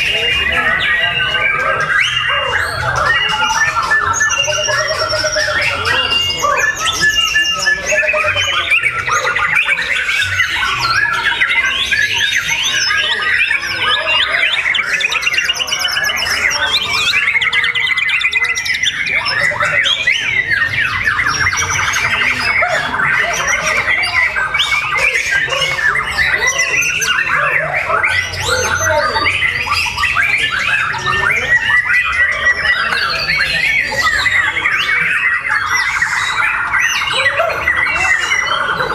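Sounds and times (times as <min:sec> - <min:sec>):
songbird singing: 0:00.0 - 0:38.9.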